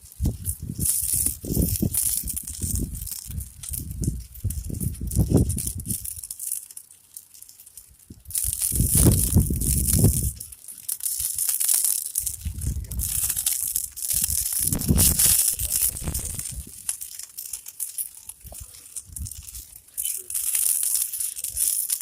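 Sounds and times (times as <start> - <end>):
burning match heads crackling: 0.0 - 22.0
gusting low rumble: 12.3 - 13.4, 14.2 - 16.8.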